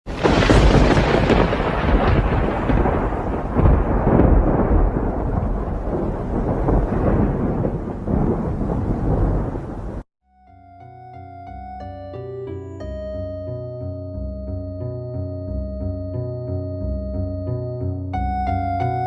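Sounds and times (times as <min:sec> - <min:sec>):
rolling thunder: 0:00.1 - 0:10.1.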